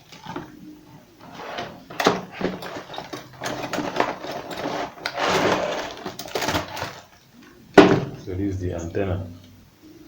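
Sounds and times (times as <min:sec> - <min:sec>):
packaging rustling: 0:01.2 - 0:07.2.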